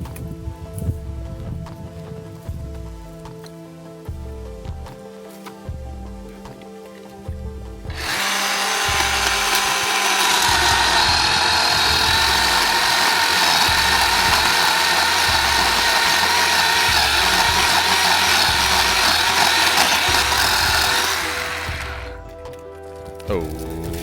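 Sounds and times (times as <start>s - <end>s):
background music: 0.0s - 24.0s
chainsaw cutting: 7.9s - 22.3s.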